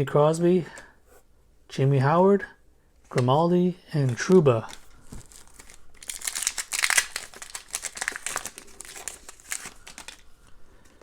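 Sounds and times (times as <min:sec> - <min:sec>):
plastic wrapper tearing and crinkling: 0:04.2 - 0:10.3.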